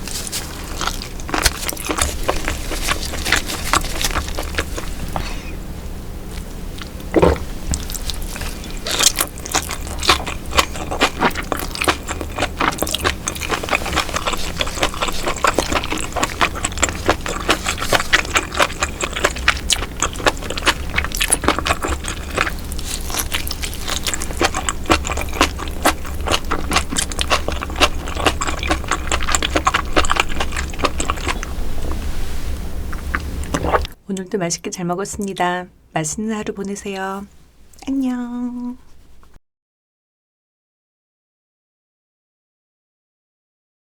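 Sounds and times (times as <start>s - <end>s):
wet chewing: 0.0s - 5.4s, 6.3s - 32.1s, 32.9s - 34.0s
steady low hum: 0.0s - 39.4s.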